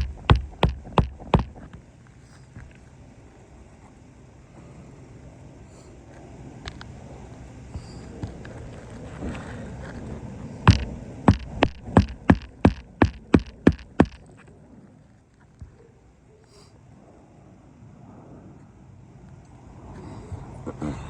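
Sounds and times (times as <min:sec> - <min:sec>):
hammer driving nail into shingle: 0:00.0 - 0:01.7, 0:10.7 - 0:14.2.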